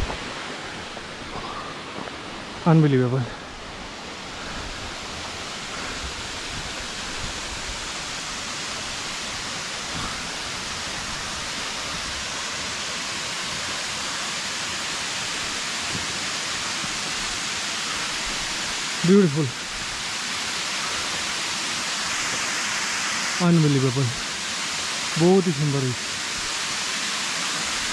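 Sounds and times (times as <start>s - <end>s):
waterfall rushing: 0.0s - 27.9s.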